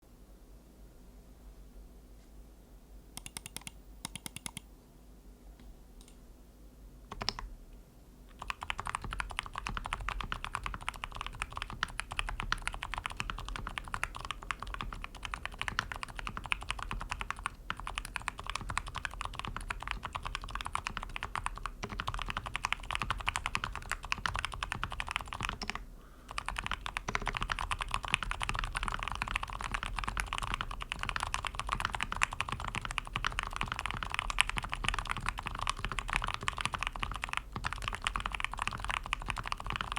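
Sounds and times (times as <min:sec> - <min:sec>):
typing on mechanical keyboard: 0:03.2 - 0:04.6, 0:07.1 - 0:07.5, 0:08.3 - 0:39.9.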